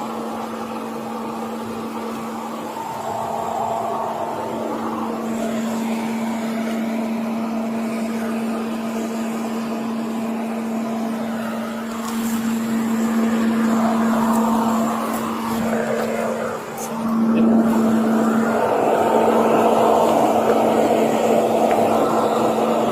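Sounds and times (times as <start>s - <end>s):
roadside vehicle drone: 0.0s - 22.9s.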